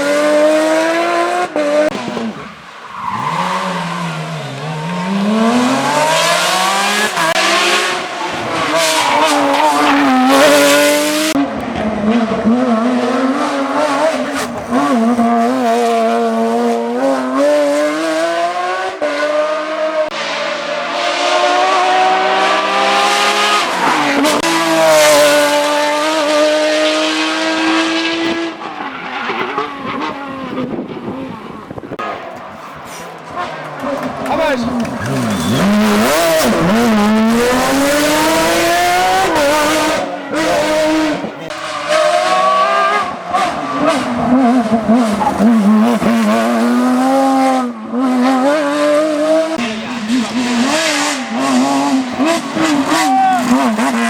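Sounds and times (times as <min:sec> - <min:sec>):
car engine revving hard: 0:00.0 - 0:28.6, 0:29.3 - 0:54.0
tyre squeal: 0:33.8 - 0:36.8.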